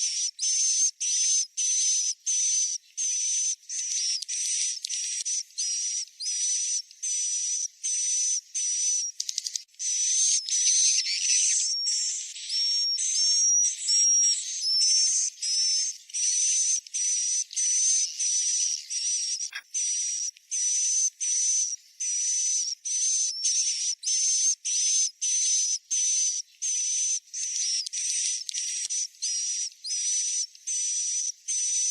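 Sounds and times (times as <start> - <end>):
high-pitched hissy bird chirps: 8.6 - 24.5.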